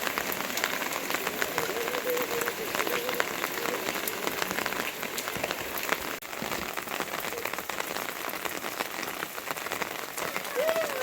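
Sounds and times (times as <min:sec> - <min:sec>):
raindrop ticks: 0:00.0 - 0:11.0
steady rain falling: 0:00.0 - 0:11.0.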